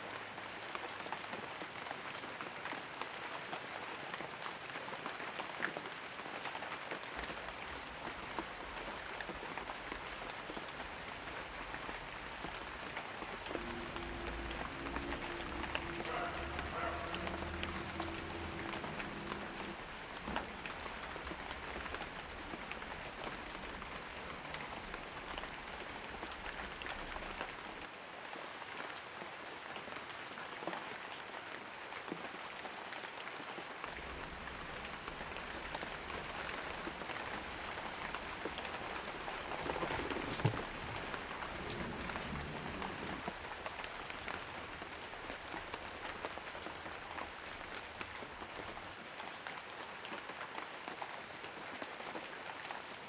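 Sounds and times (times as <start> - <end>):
steady rainfall: 7.2 - 27.9, 33.9 - 49.0.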